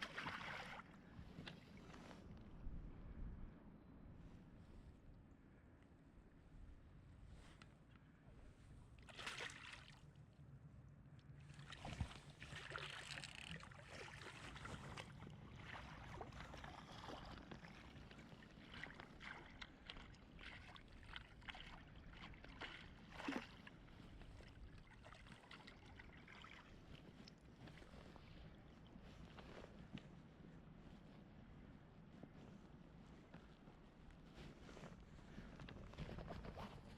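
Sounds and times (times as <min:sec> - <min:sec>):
water sloshing and splashing: 0:00.0 - 0:02.4, 0:09.0 - 0:10.2, 0:11.4 - 0:30.0.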